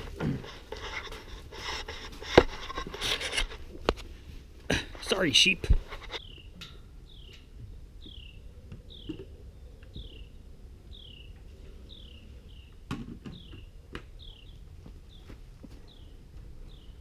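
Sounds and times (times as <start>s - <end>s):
small bird chirping: 6.2s - 9.2s.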